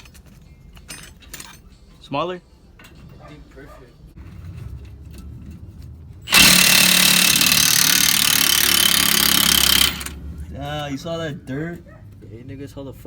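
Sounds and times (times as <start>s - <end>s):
impact wrench running: 6.3s - 10.2s.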